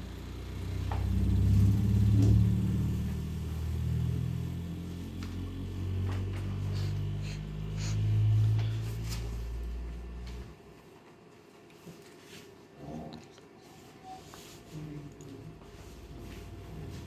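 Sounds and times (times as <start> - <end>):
low hum of vibration exciter: 0.0 - 10.8.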